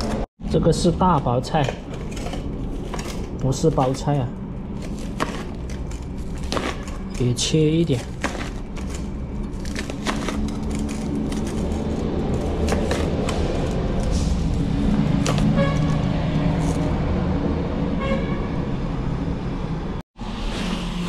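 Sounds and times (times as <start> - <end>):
car horn toots: 15.4 - 16.0, 18.0 - 18.7.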